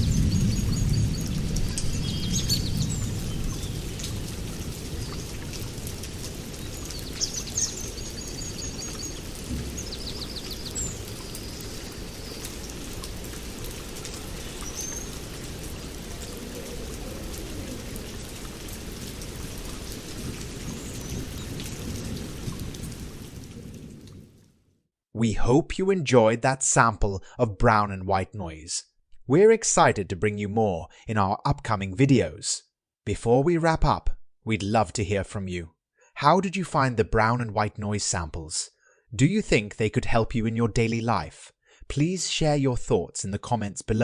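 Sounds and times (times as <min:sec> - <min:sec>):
birds chirping: 0:00.0 - 0:05.3, 0:06.0 - 0:13.0, 0:13.6 - 0:17.9
steady rain pattering: 0:00.0 - 0:24.7.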